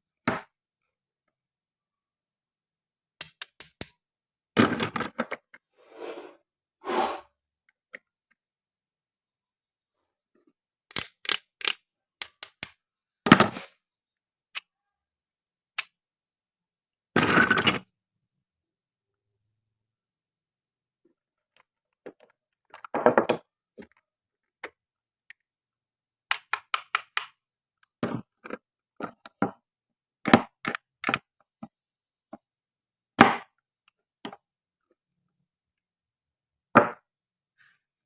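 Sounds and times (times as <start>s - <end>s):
toy food being cut and handled: 3.2s - 4.0s, 10.9s - 12.8s.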